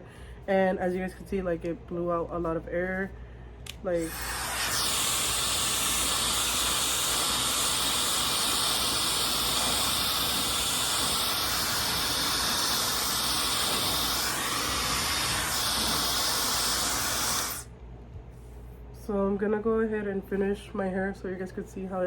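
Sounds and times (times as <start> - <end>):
hair dryer air rush: 3.7 - 17.7.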